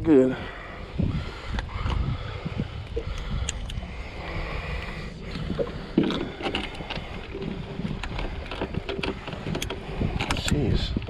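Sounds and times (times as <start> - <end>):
wind buffeting microphone: 0.0 - 11.0
handling clicks and knocks: 5.9 - 11.0.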